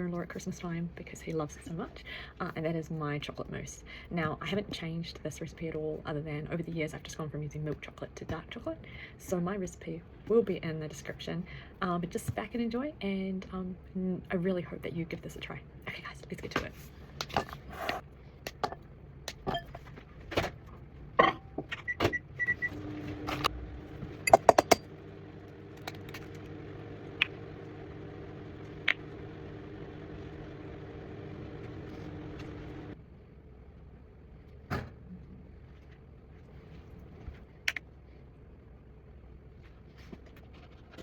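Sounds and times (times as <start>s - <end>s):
kitchen utensils clattering: 21.2s - 21.7s, 24.3s - 24.8s
kitchen appliance motor humming: 22.4s - 33.0s.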